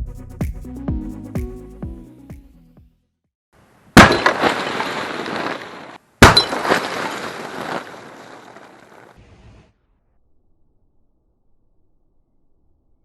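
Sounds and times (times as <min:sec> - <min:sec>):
sharp loud blast: 0:04.0 - 0:08.7
glass shattering: 0:04.0 - 0:09.1.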